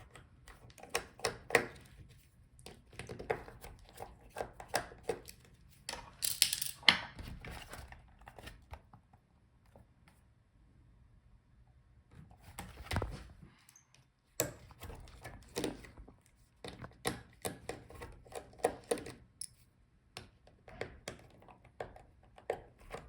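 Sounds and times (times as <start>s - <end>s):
tools clicking and tapping on plastic: 0.0s - 2.0s, 2.6s - 7.1s, 14.4s - 16.0s, 16.6s - 23.0s.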